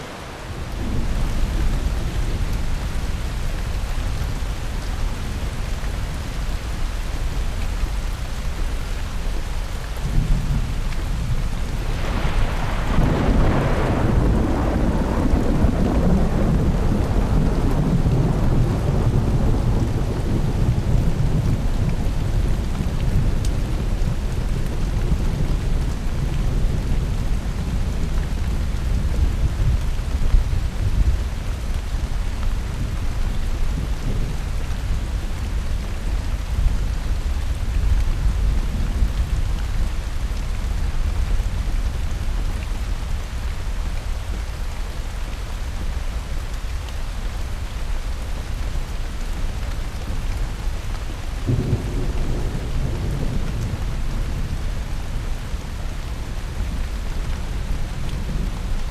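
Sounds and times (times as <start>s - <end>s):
steady rain: 0.0s - 58.9s
rolling thunder: 10.0s - 31.2s, 51.4s - 54.6s.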